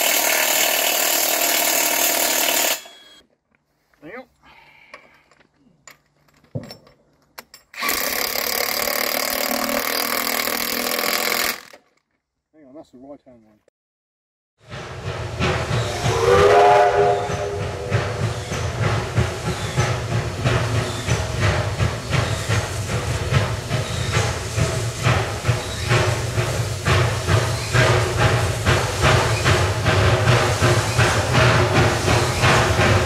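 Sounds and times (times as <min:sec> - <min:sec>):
steam locomotive chuffing: 0:14.6 - 0:33.0
hiss of steam: 0:15.1 - 0:33.0
steam locomotive whistle: 0:15.8 - 0:18.4.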